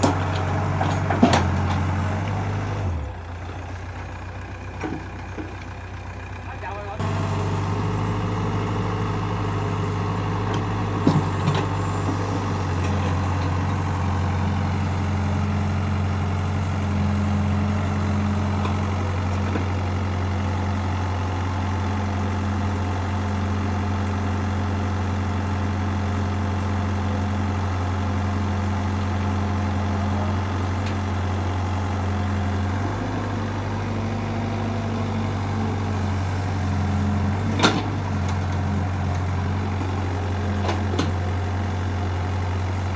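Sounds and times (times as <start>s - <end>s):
heavy machine engine running: 0.0s - 42.9s.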